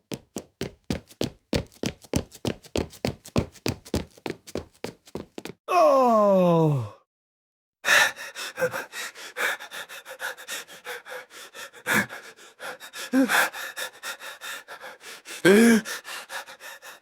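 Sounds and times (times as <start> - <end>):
rapid running footsteps: 0.0 - 5.6
man gasping or whimpering: 7.9 - 17.0
man panting hard: 7.9 - 17.0.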